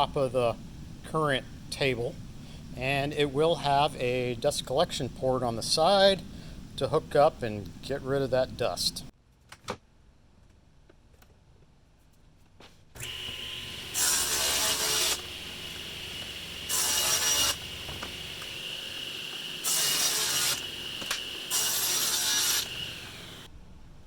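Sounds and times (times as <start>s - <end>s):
electric saw cutting wood: 13.0s - 23.5s.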